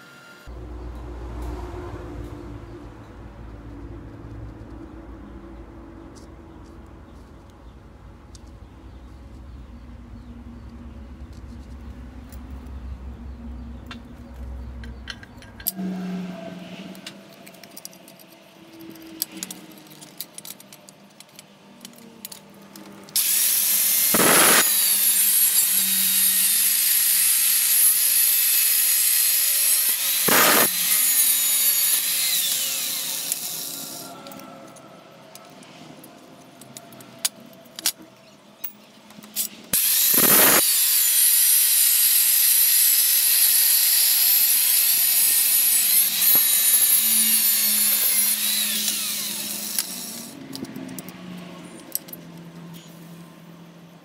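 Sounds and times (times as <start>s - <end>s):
metal parts clicking: 13.8s - 15.8s, 16.9s - 52.9s
power tool hissing on steel: 23.2s - 34.2s, 39.8s - 50.4s.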